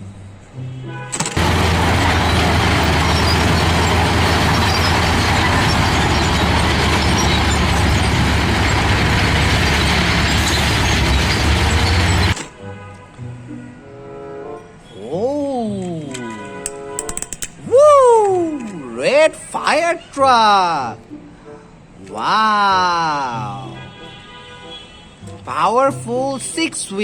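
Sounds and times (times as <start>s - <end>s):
toy truck engine rumble: 1.1s - 12.5s.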